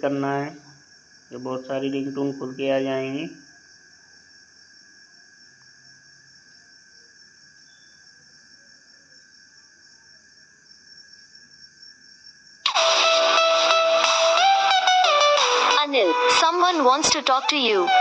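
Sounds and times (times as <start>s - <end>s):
distorted electric guitar ringtone: 12.7s - 16.4s.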